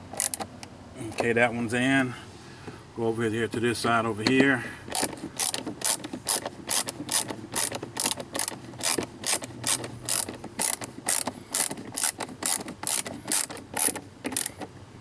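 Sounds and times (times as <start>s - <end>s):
ratcheting driver clicking: 0.0s - 1.3s, 4.2s - 14.7s.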